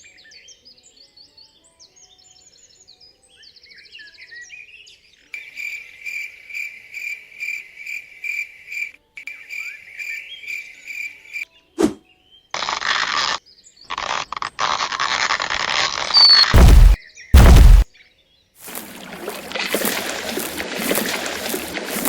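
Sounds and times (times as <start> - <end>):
faint birdsong chirps: 16.1 - 16.5
loud burst of noise: 16.1 - 17.8.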